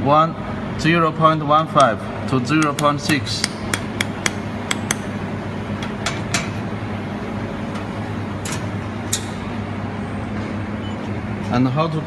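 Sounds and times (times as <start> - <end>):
laser welding machine humming: 0.6 - 11.9.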